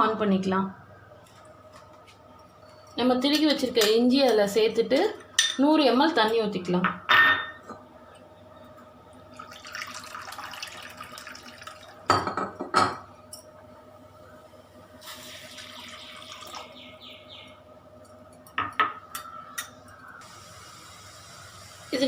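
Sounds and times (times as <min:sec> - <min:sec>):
water pouring into a pan: 0:09.4 - 0:12.1, 0:15.0 - 0:16.8.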